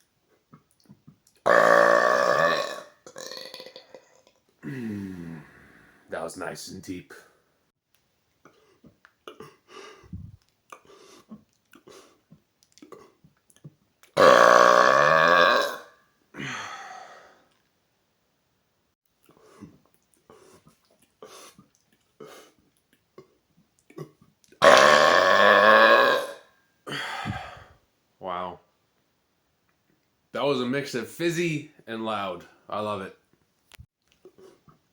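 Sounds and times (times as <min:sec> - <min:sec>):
man burping: 0:01.4 - 0:05.5, 0:14.2 - 0:16.8, 0:23.9 - 0:27.7.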